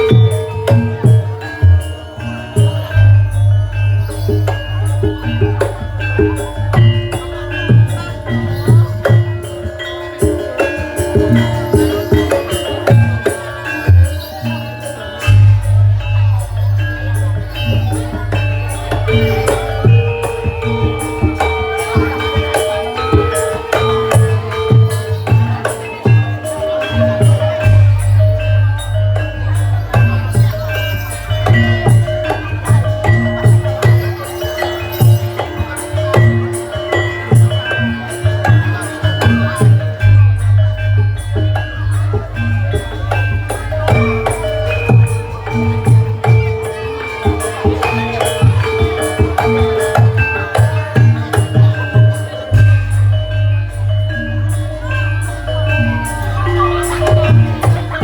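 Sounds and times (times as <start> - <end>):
rattling jingles: 0.0 - 58.0
ringing metallic tones: 0.0 - 58.0
drum strikes: 15.2 - 54.7.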